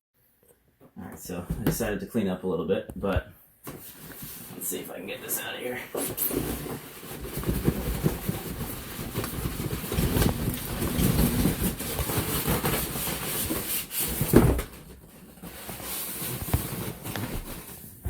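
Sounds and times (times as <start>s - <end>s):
cardboard boxes scraping: 5.9s - 18.0s.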